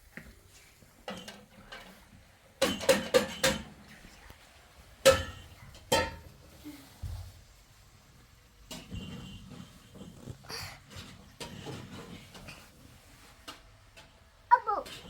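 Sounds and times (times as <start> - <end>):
dishes and pots clattering: 1.0 - 4.1, 5.0 - 6.6, 8.6 - 15.0.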